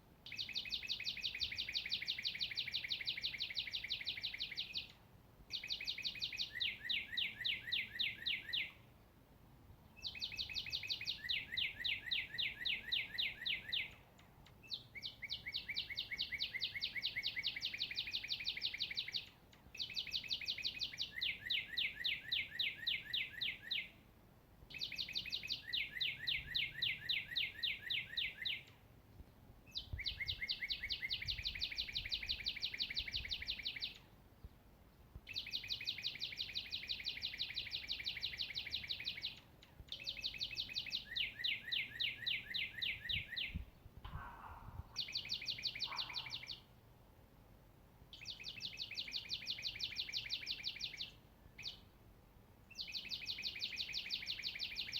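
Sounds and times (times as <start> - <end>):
songbird trilling: 0.2 - 8.8, 10.0 - 14.0, 14.6 - 24.0, 24.7 - 28.8, 29.7 - 34.0, 35.3 - 46.7, 48.1 - 51.8, 52.7 - 54.9.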